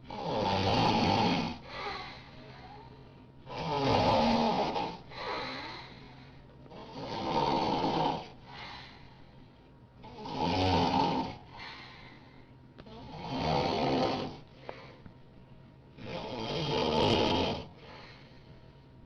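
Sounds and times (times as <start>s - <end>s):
loud rasping snores: 0.0s - 1.9s, 3.5s - 5.0s, 6.7s - 8.3s, 10.0s - 11.5s, 12.9s - 14.4s, 16.0s - 17.7s.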